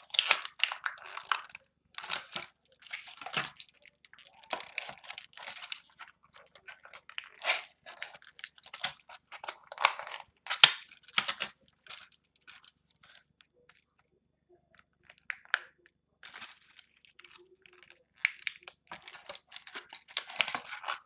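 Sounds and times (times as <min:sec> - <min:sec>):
plastic packaging crinkling: 0:00.0 - 0:13.8, 0:14.8 - 0:21.0
plastic snapping: 0:08.6 - 0:12.1, 0:17.8 - 0:21.0.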